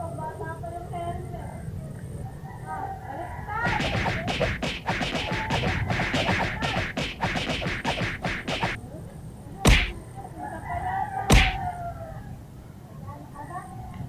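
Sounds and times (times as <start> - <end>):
loud sharp whacks: 3.6 - 8.8, 9.7 - 10.0, 11.3 - 11.7
short sharp slaps: 3.6 - 8.8, 9.7 - 10.0, 11.3 - 11.7.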